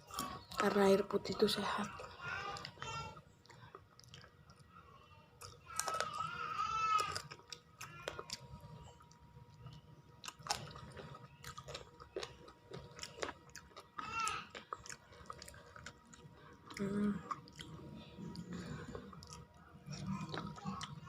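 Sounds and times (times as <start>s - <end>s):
person chewing food: 0.0s - 0.7s, 1.9s - 4.8s, 5.4s - 21.0s.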